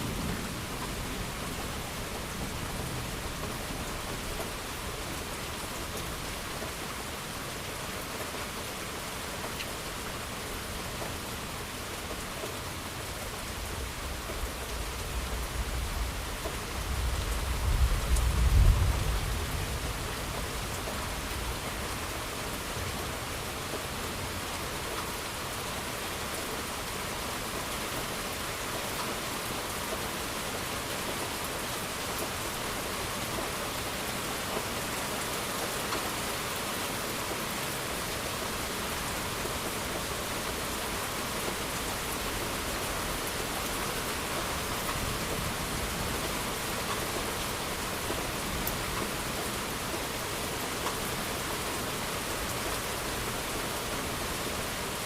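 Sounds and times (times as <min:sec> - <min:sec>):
rain pattering: 0:00.0 - 0:55.0
low rumble of thunder: 0:13.7 - 0:21.9.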